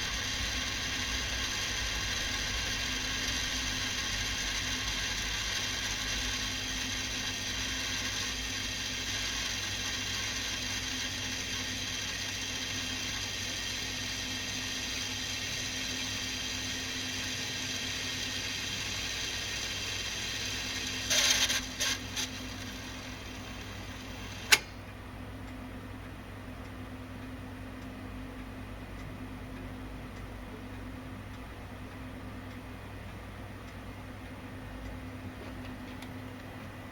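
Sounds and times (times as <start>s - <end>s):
tape deck whirring and grinding: 0.0s - 24.8s
mechanical clunks: 24.4s - 24.8s
sharp click: 24.4s - 24.9s.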